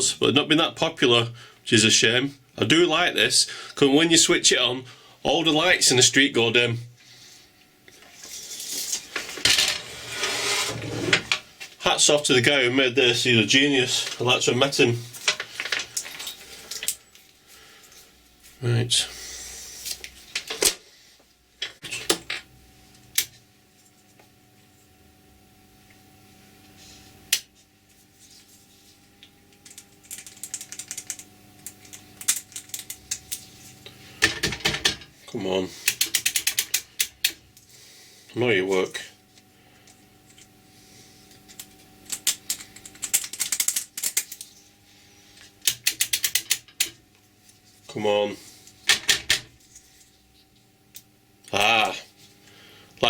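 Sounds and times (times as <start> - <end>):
battery charger clicking and rattling: 29.7 - 33.4, 41.6 - 44.4.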